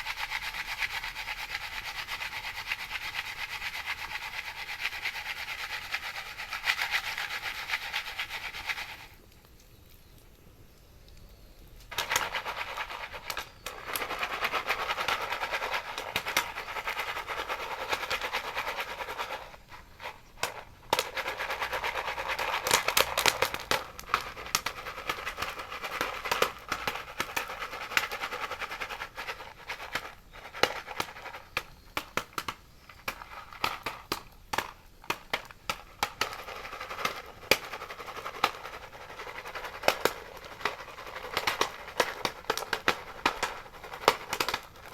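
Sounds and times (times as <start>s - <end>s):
campfire crackling and popping: 19.7s - 28.1s, 30.2s - 44.9s.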